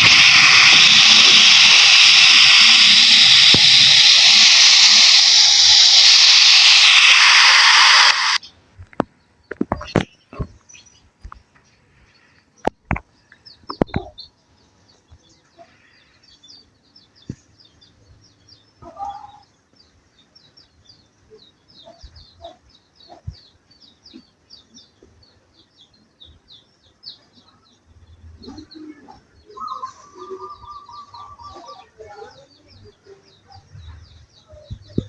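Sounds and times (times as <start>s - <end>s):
sharp clicks: 0.0s - 10.1s
birds chirping: 0.0s - 35.0s.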